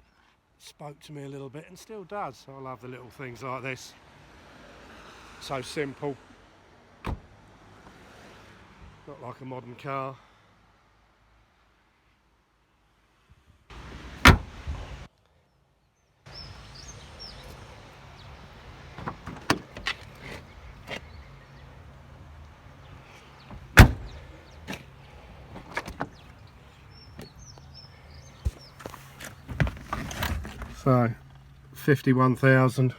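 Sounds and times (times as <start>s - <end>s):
car door clicking: 7.0s - 7.3s, 14.2s - 14.5s, 19.0s - 21.1s, 23.5s - 24.9s, 25.6s - 26.4s
car door shutting: 7.0s - 7.4s, 14.2s - 14.8s, 18.9s - 21.2s, 23.4s - 24.9s, 25.5s - 26.4s, 28.4s - 30.8s.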